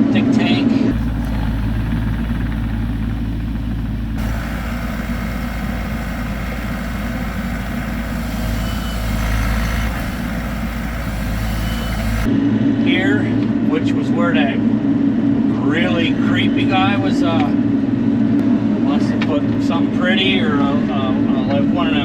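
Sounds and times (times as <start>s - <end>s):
engine hiss: 0.9s - 12.3s
excavator diesel engine running: 0.9s - 12.3s.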